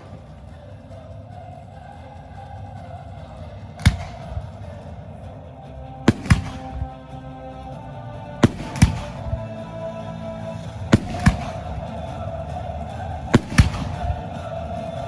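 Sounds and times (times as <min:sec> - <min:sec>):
music playing: 0:00.0 - 0:15.0
firework bangs: 0:03.8 - 0:04.6, 0:06.1 - 0:07.0, 0:08.4 - 0:09.6, 0:10.9 - 0:12.3, 0:13.4 - 0:14.6.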